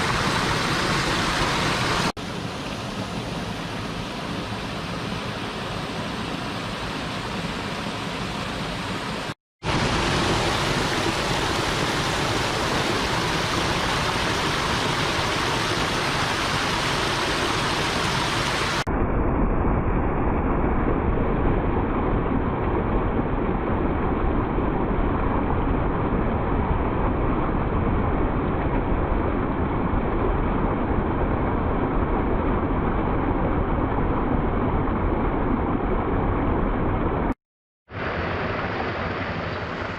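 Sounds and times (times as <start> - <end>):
stream water rushing: 0.0 - 18.9, 37.9 - 39.9.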